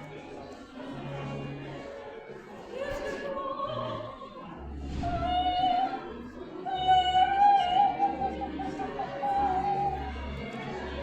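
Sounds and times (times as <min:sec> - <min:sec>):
music: 0:00.0 - 0:11.0
woman singing long high notes: 0:05.0 - 0:10.2.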